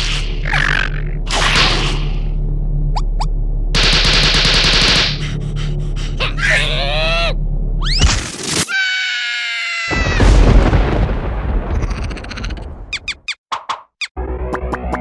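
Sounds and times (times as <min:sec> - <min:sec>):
squeaky cartoon cries: 0:06.1 - 0:08.0, 0:08.7 - 0:10.3.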